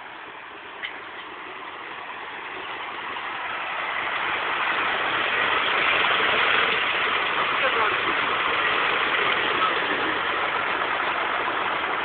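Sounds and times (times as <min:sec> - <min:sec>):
heavy vehicle engine drone: 0:00.0 - 0:12.0.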